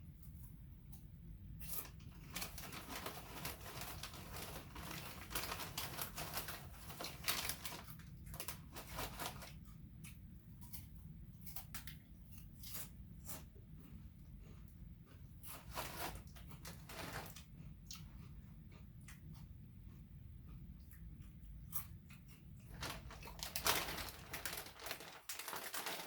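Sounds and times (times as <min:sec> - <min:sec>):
chip bag crinkling: 0:01.6 - 0:09.6, 0:15.4 - 0:17.5, 0:22.7 - 0:26.0.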